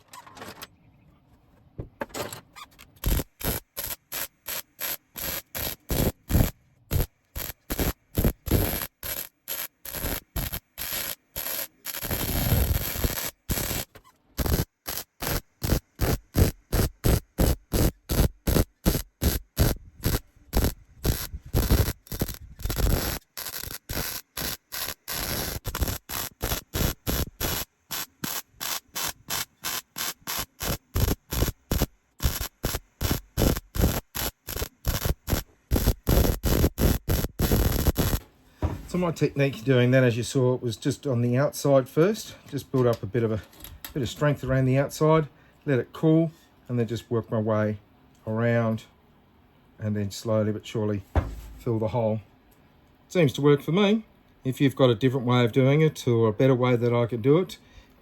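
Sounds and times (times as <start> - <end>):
welding arc crackling: 3.0 - 38.3.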